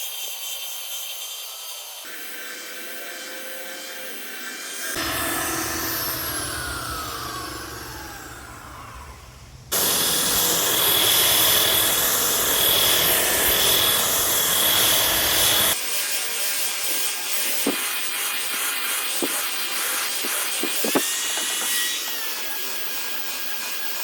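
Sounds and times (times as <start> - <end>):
belt sander whining: 4.9 - 15.8, 16.8 - 22.3
belt sander sanding wood: 4.9 - 23.7.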